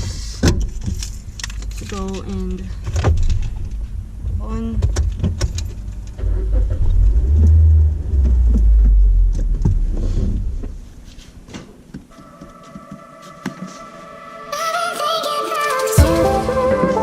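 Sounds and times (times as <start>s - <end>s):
car rumble inside cabin: 1.9s - 11.2s
background music tones: 12.1s - 17.0s.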